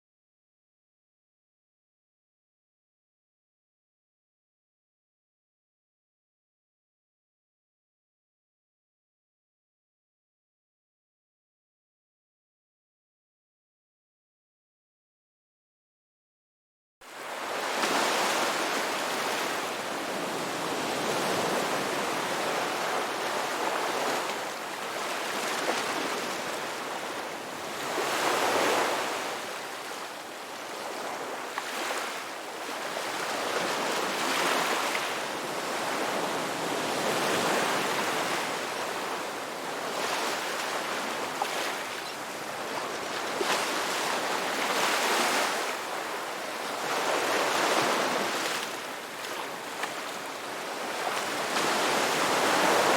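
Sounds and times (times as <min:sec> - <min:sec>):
ocean waves breaking on shore: 0:17.0 - 0:52.9.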